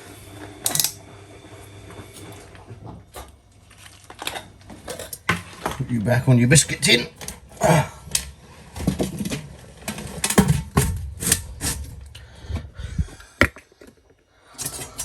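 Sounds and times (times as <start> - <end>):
objects being handled and set down: 2.2 - 5.9, 7.2 - 15.0.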